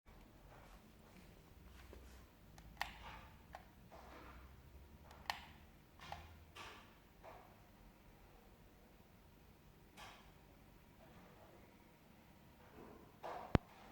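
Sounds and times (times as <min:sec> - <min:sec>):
soft rustling: 0:00.2 - 0:02.4.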